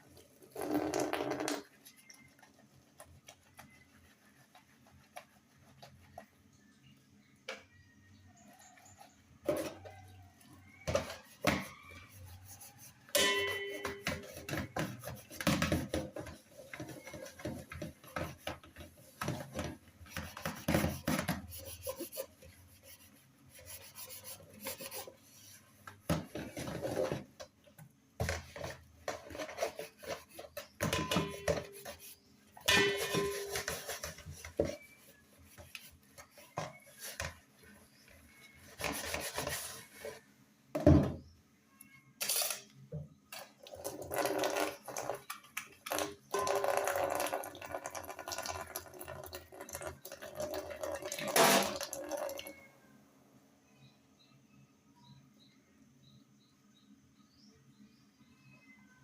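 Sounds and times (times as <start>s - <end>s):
ringing metal clanks: 13.2s - 14.1s
metal pots and cutlery clattering: 13.2s - 14.7s, 30.8s - 31.8s, 32.6s - 34.3s, 45.9s - 47.3s
rubbing strokes: 20.0s - 25.8s.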